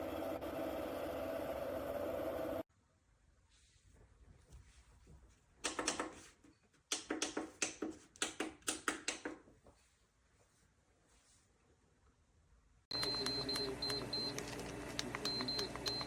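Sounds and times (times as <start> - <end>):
sharp clicks and knocks: 5.6 - 6.2, 6.9 - 9.4.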